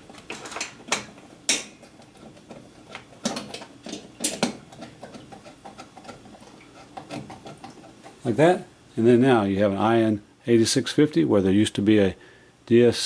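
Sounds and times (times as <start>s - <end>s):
sharp clicks and knocks: 0.0s - 8.2s.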